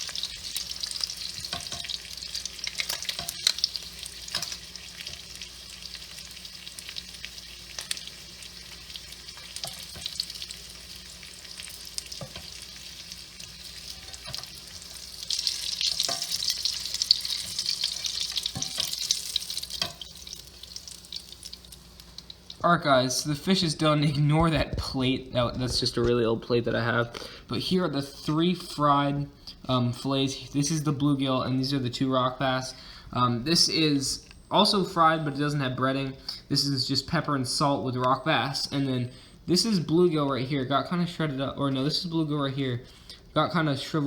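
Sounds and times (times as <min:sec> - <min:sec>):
fish frying in oil: 0:00.0 - 0:22.6
oil popping and crackling: 0:00.0 - 0:22.6.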